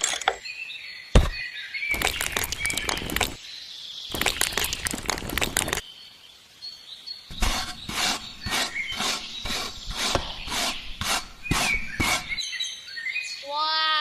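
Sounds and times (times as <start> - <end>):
rhythmic rasping scraping strokes: 7.3 - 12.4.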